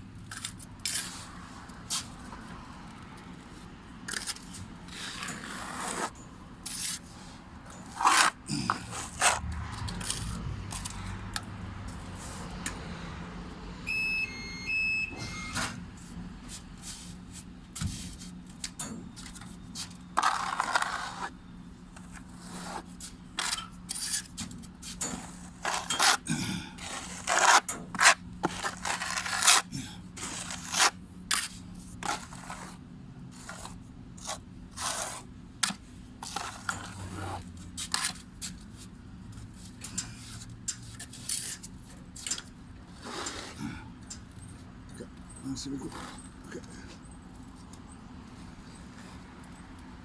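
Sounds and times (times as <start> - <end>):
hand tool scraping hard surface: 7.8 - 10.9, 25.0 - 32.8, 33.4 - 35.3, 43.0 - 43.7.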